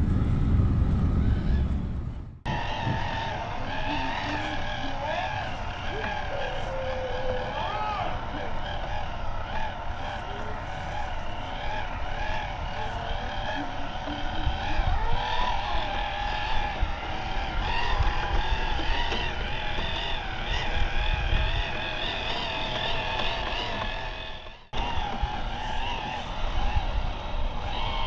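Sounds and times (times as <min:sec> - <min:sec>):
low rumble: 0:00.0 - 0:03.9
rc car electric motor whining: 0:02.5 - 0:28.0.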